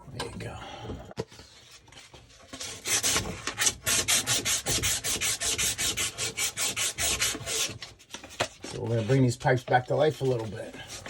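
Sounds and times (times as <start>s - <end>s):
sandpaper rasping on pipe: 2.5s - 7.8s.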